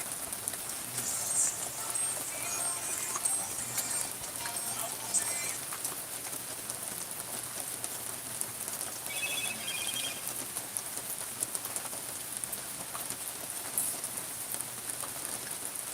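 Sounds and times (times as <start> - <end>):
steady rain falling: 0.0 - 15.9
high chirps: 1.0 - 5.6, 9.0 - 10.5.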